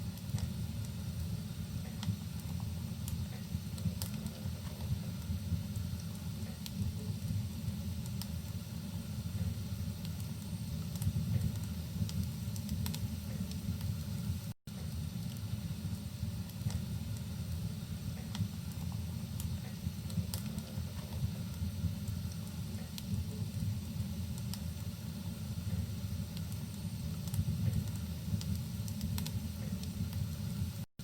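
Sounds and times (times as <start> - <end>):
rain rumble: 0.0 - 30.8
fireplace fire crackling: 0.0 - 30.9.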